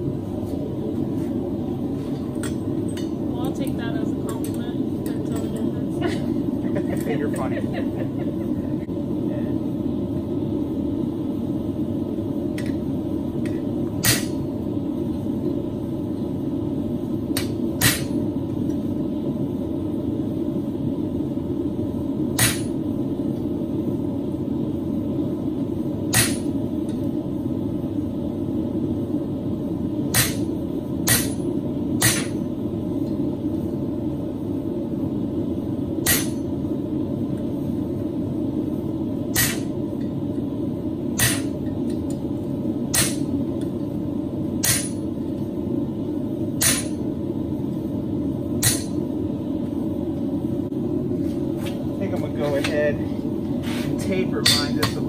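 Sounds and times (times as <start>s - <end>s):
steady low rumble: 0.0s - 55.0s
hammer blows on steel on anvil: 46.6s - 47.0s.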